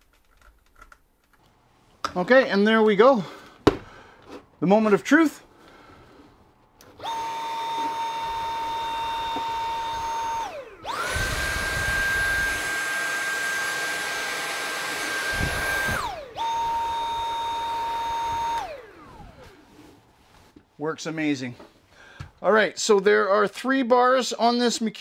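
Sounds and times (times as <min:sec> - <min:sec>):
vacuum motor whining: 0:06.8 - 0:20.0.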